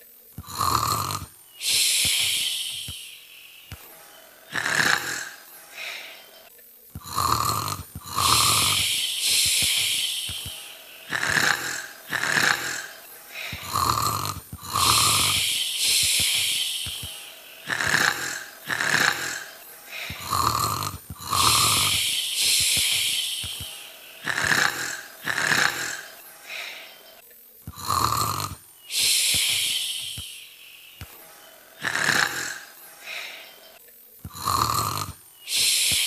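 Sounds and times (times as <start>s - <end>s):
girl imitating snoring: 0.4s - 2.9s, 4.5s - 5.8s, 7.0s - 17.0s, 17.6s - 26.2s, 27.7s - 30.2s, 31.8s - 33.3s, 34.3s - 36.0s.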